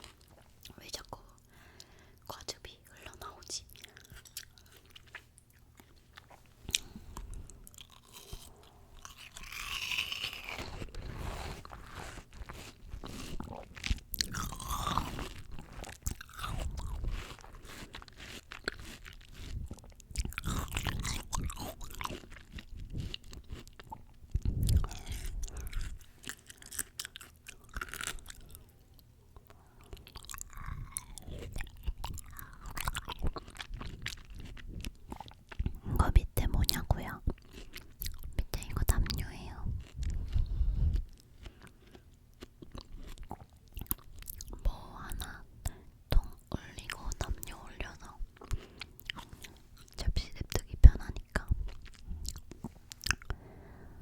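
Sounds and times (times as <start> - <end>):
crunchy fruit chewing: 0.0 - 1.9, 3.1 - 53.4
wet mouth sounds: 3.2 - 28.6, 29.9 - 53.4.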